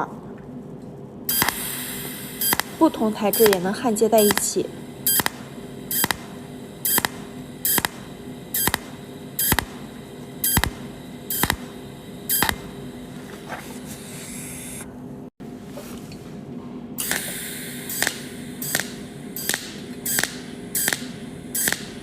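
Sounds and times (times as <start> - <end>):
steady electrical hum: 0.0 - 22.0
welding machine sharp snaps: 1.3 - 12.8, 17.0 - 22.0.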